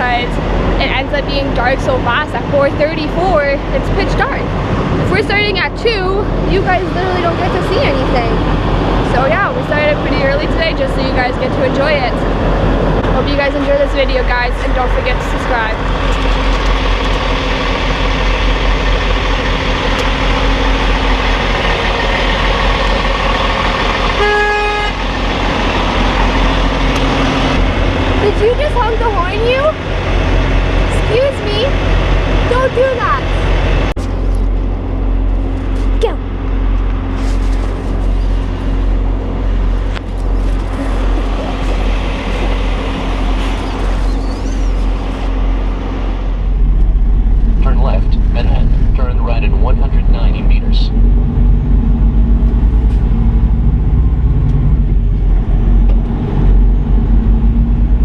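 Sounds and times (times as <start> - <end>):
diesel engine idling: 0.0 - 58.0
truck horn honk: 24.1 - 25.2.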